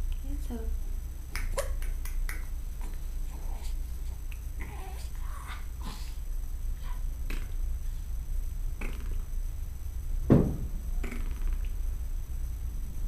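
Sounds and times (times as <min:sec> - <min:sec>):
low steady rumble: 0:00.0 - 0:13.0
baby cooing: 0:02.8 - 0:06.0.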